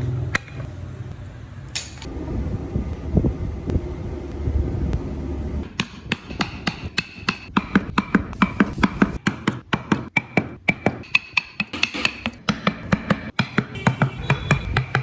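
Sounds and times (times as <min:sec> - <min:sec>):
mallet tapping chisel into wood: 0:05.8 - 0:15.0.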